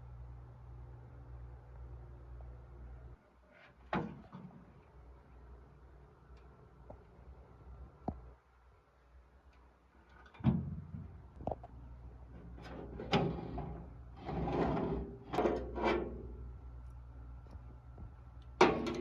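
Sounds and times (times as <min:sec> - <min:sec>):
short sliding scrapes: 0:12.7 - 0:16.2.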